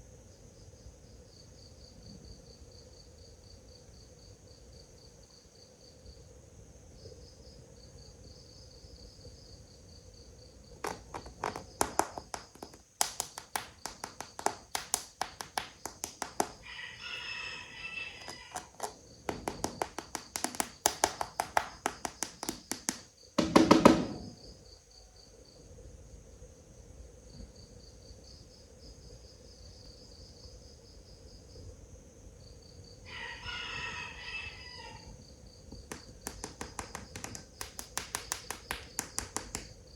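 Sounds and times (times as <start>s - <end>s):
crickets chirping: 0.0s - 39.9s
rooster crowing: 16.2s - 18.9s, 33.1s - 35.2s.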